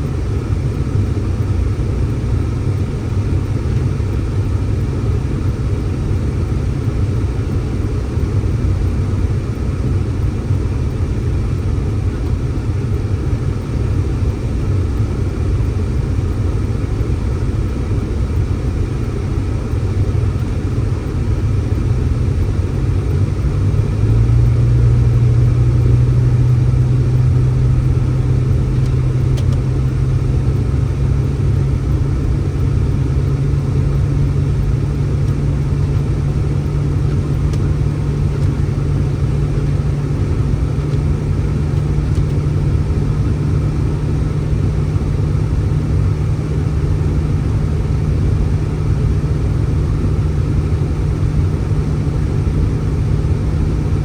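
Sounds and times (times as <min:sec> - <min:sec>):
constant low hum: 0:00.0 - 0:54.0
low rumble: 0:17.3 - 0:50.3.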